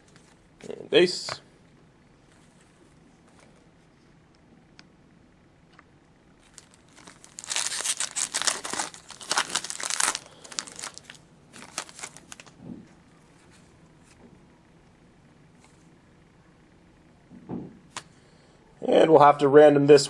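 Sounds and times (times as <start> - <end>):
foil wrapper tearing and crinkling: 6.4 - 12.6.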